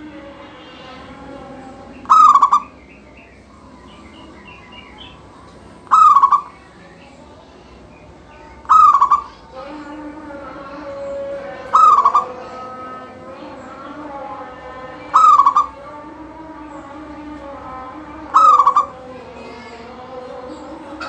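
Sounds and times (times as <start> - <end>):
dove cooing: 1.9 - 2.8, 3.9 - 6.7, 8.6 - 9.5, 11.6 - 13.1, 15.0 - 15.9, 18.2 - 19.1.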